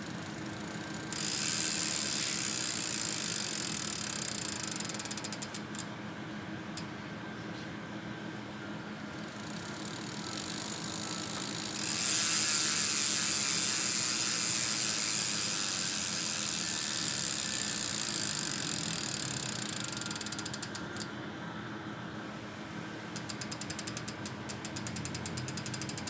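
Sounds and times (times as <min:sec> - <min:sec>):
bicycle freehub ratchet clicking: 0:00.0 - 0:05.8, 0:09.2 - 0:21.1, 0:23.2 - 0:26.0.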